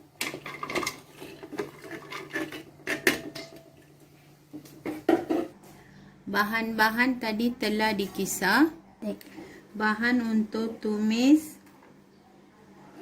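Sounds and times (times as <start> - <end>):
containers and utensils clinking: 0.2 - 3.9.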